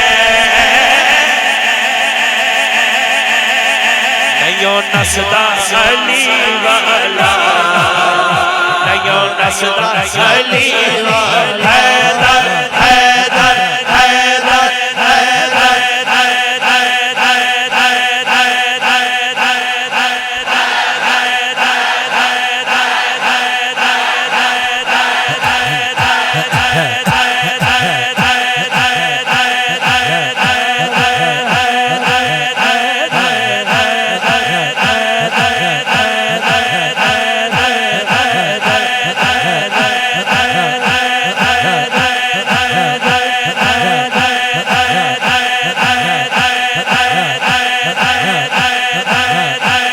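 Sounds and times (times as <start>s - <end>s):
deeper voices chanting: 0.0s - 49.9s
devotional chanting: 0.0s - 49.9s
repeating beat: 4.9s - 14.3s, 25.0s - 49.9s.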